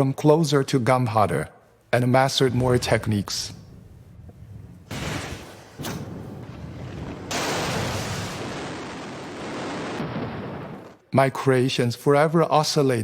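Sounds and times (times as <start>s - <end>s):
gunpowder burst: 4.9s - 11.0s.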